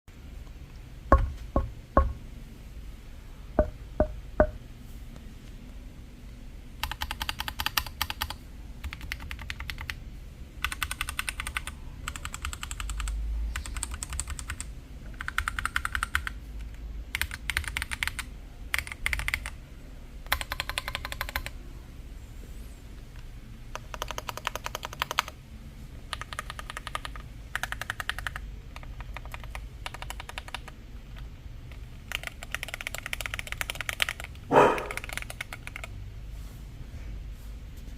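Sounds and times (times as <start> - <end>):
sharp knocks: 1.1 - 2.2, 3.6 - 4.6
mechanical keyboard typing: 6.8 - 10.0, 10.6 - 19.6, 20.2 - 21.6, 23.7 - 25.4, 26.1 - 35.9.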